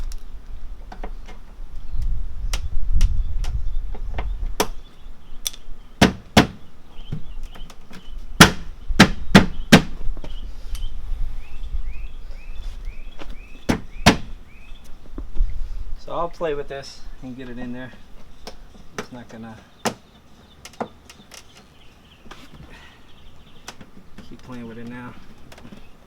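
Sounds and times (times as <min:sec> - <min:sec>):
panel knocking against clips: 0:13.7 - 0:14.3.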